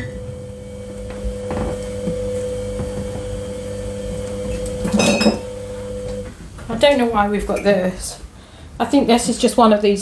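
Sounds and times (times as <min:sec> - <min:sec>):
steady electrical hum: 0:00.0 - 0:10.0
items knocking and clinking: 0:04.4 - 0:06.2.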